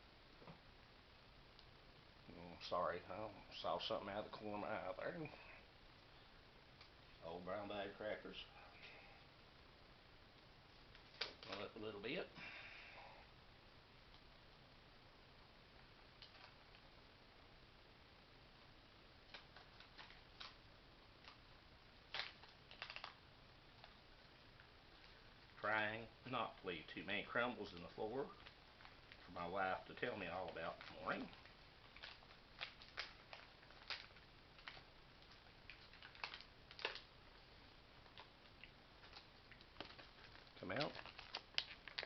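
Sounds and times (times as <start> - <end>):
cracker packet crackling: 10.9 - 12.1, 19.2 - 42.0.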